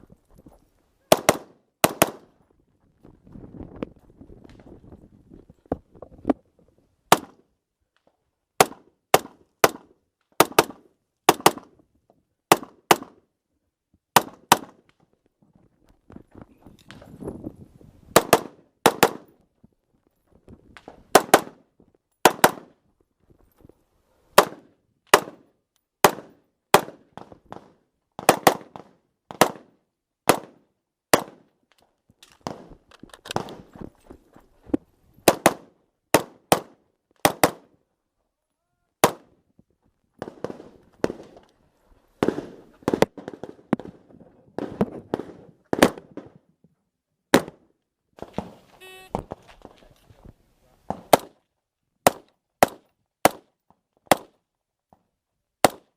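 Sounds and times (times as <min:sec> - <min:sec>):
rifle shots in quick pairs: 0:01.1 - 0:02.3, 0:10.4 - 0:11.7, 0:18.1 - 0:19.3, 0:21.1 - 0:21.6, 0:22.2 - 0:22.7.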